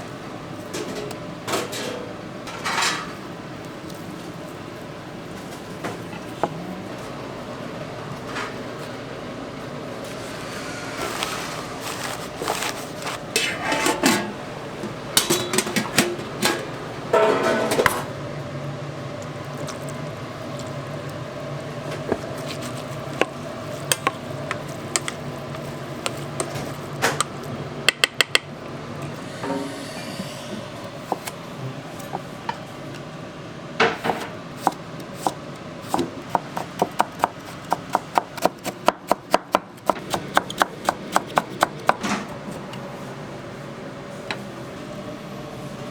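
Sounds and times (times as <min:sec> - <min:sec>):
steady hum: 0:00.0 - 0:38.8
dishes and utensils clinking: 0:00.8 - 0:03.2, 0:13.3 - 0:14.4, 0:15.2 - 0:18.1.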